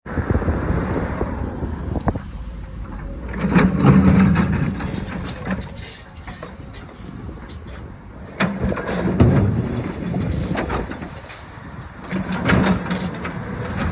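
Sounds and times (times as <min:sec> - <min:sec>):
backhoe engine rumbling: 0:00.1 - 0:13.9.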